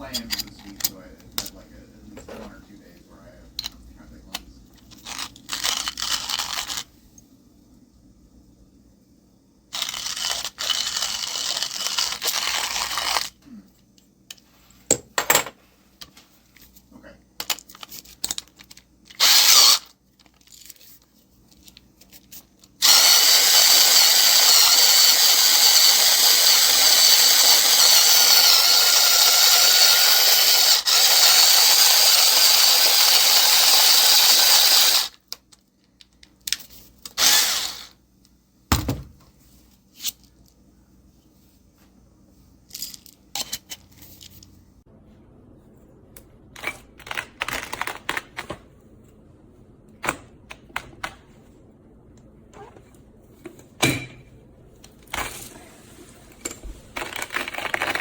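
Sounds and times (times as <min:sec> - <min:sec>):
coffee grinder motor running: 0:09.8 - 0:13.3, 0:19.1 - 0:19.9, 0:22.8 - 0:35.2, 0:37.2 - 0:37.9.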